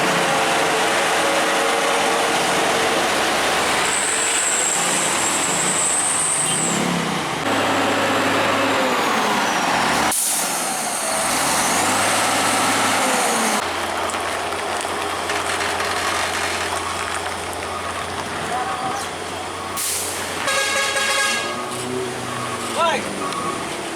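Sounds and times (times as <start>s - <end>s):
heavy truck engine running: 0.0s - 23.9s
air brakes hissing: 10.0s - 12.0s, 19.8s - 20.5s.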